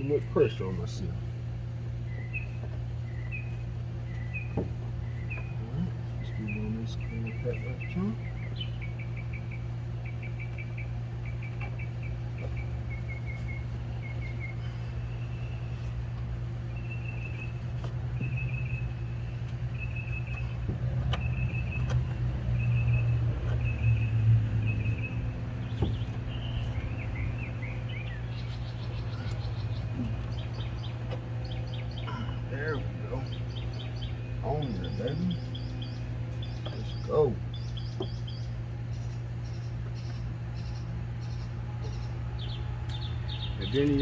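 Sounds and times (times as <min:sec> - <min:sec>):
steady low hum: 0:00.0 - 0:44.0
bird chirping: 0:01.9 - 0:44.0.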